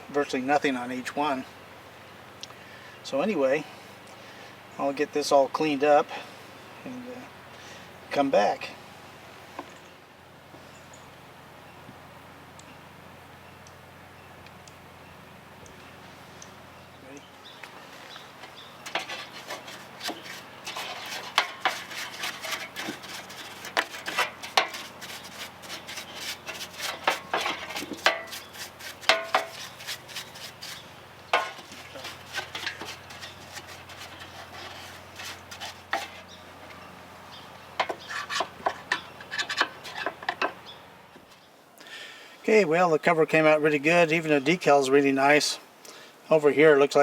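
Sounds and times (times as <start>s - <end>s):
brush scrubbing plastic: 18.4s - 36.3s
clicks and knocks of handling: 31.3s - 36.8s, 37.8s - 40.6s.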